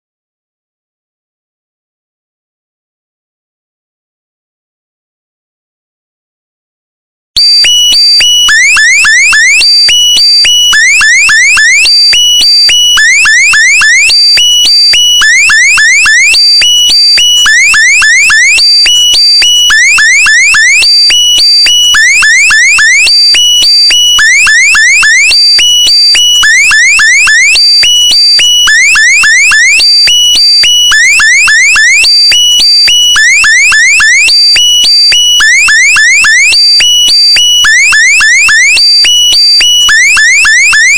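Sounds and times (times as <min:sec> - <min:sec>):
electronic alarm beeping: 0:07.4 - 0:40.9.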